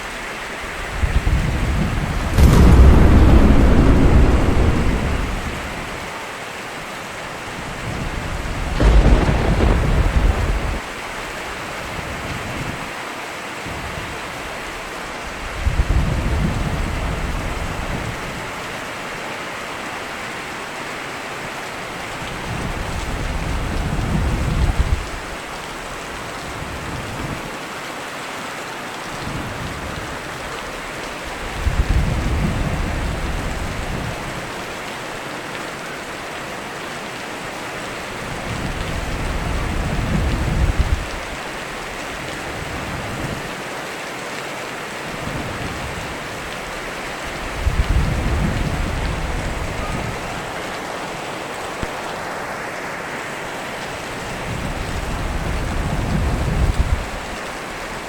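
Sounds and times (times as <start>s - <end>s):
heavy rain falling: 0.0s - 6.2s, 7.3s - 12.5s, 14.1s - 58.0s
thunder rumbling: 1.0s - 6.1s, 8.6s - 11.5s.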